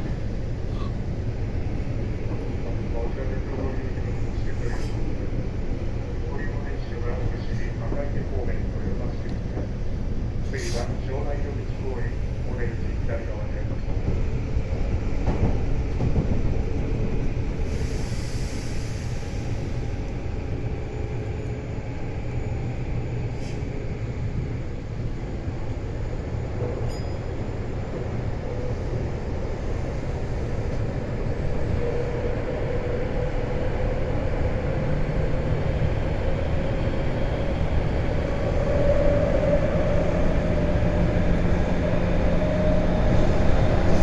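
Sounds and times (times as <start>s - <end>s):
train wheels rumbling: 26.3s - 44.0s.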